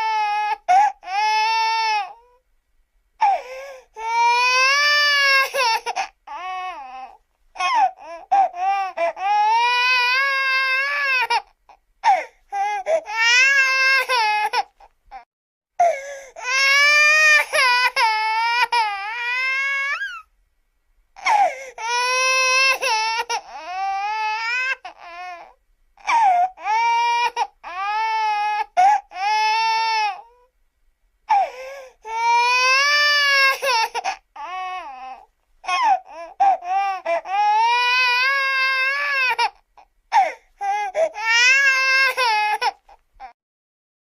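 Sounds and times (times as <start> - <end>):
baby crying: 0.0 - 2.4, 3.2 - 20.3, 21.2 - 30.5, 31.3 - 43.4.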